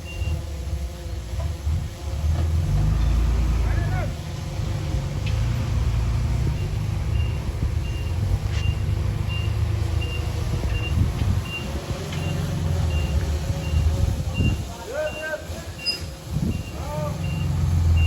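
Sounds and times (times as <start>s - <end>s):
diesel machinery rumbling: 1.1s - 18.0s
reversing alarm beeping: 6.6s - 18.0s.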